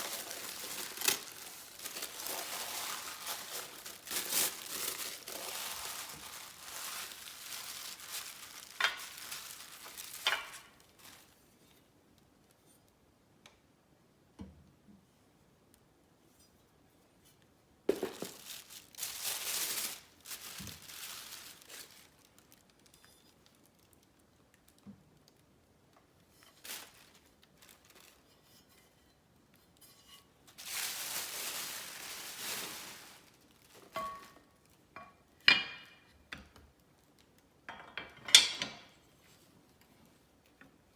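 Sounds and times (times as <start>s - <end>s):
packaging crinkling and rustling: 0.0s - 11.4s, 17.9s - 25.5s, 26.4s - 28.4s, 30.5s - 34.9s.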